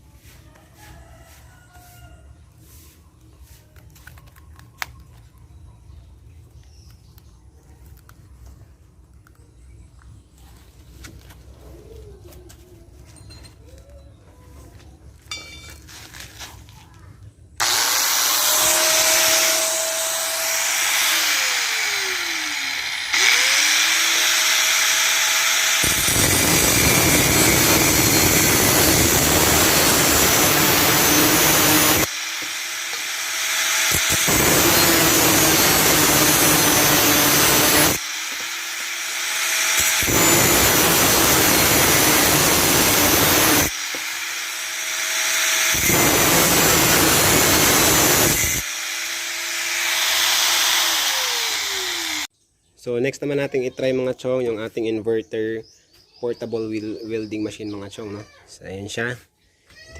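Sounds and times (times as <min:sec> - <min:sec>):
angle grinder motor whine: 0:17.6 - 0:52.3
grinder disc cutting rasp: 0:17.6 - 0:52.3.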